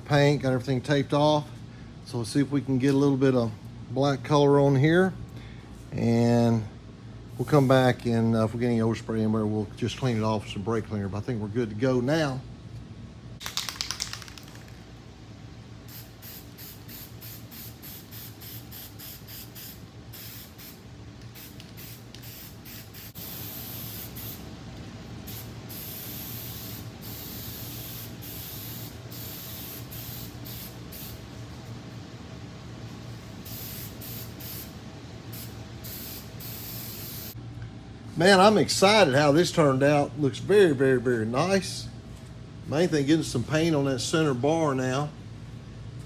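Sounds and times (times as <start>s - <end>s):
spray paint hissing: 13.4s - 14.7s, 15.9s - 24.5s, 25.2s - 31.3s, 33.3s - 37.4s.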